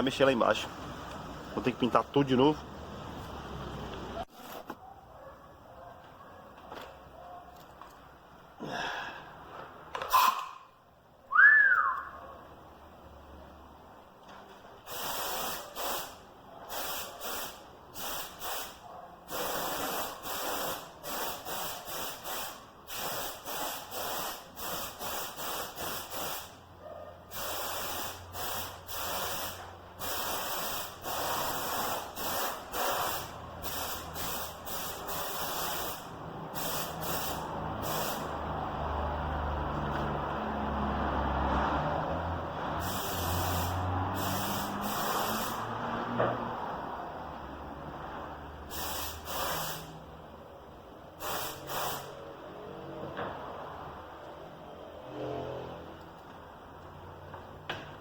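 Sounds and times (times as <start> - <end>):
spray paint hissing: 14.9 - 26.6, 27.3 - 38.4, 42.8 - 45.7, 48.7 - 50.0, 51.2 - 52.2.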